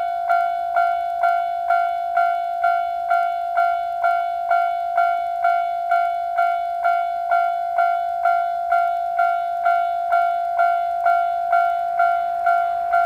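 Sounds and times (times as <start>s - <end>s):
electronic crossing bell ringing: 3.6s - 13.0s.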